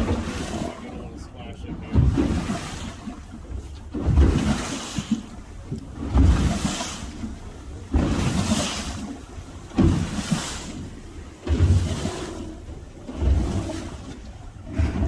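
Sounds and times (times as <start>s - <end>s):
wind and water rushing on boat: 0.0s - 15.0s.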